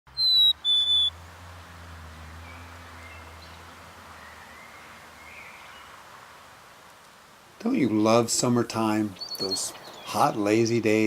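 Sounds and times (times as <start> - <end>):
distant bird calls: 0.1 - 11.0
bird's whistled note: 0.2 - 1.1.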